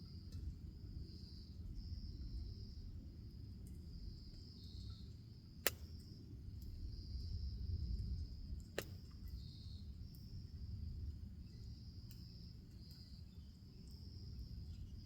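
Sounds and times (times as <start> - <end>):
insects chirring: 0.0 - 15.0
sharp fire pops: 5.6 - 6.8, 8.7 - 9.5.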